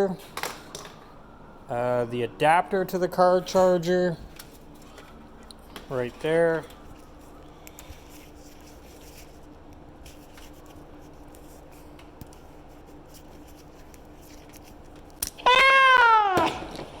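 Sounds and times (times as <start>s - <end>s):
faint steady hum: 0.0s - 17.0s
cat meowing: 15.4s - 16.7s.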